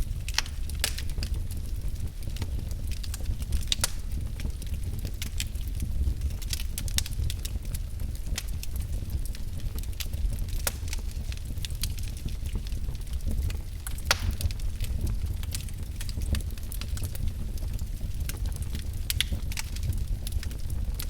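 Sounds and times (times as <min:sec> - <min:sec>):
wood fire crackling: 0:00.0 - 0:21.0
sharp pops of fire: 0:00.2 - 0:01.6, 0:02.4 - 0:05.5, 0:09.8 - 0:12.2, 0:13.2 - 0:21.0.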